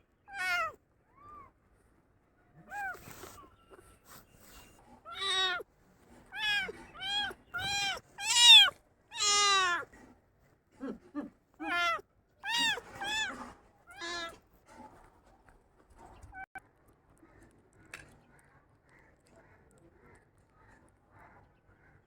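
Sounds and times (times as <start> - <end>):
kitten meowing: 0.3 - 1.5, 2.7 - 3.5, 5.1 - 5.6, 6.3 - 9.9, 11.6 - 14.4
kitten squeaks: 0.3 - 1.5, 2.6 - 5.6, 6.3 - 9.9, 11.6 - 14.4.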